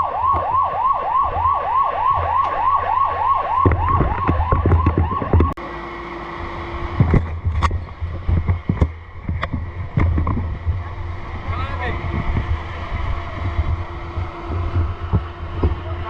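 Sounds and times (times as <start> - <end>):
fire truck siren yelping: 0.0 - 7.0
engine rumble: 0.0 - 16.0
sharp knocks: 3.6 - 5.6.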